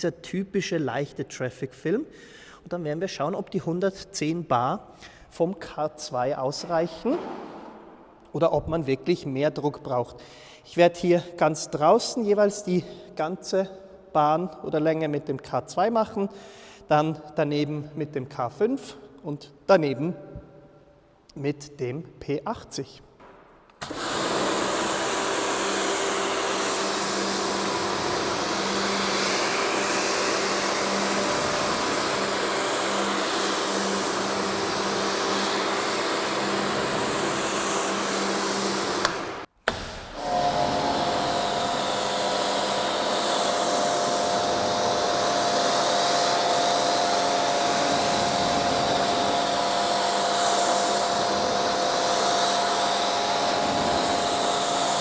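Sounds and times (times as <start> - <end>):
pressure washer motor hum: 23.8 - 55.0
water spraying hiss: 23.8 - 55.0.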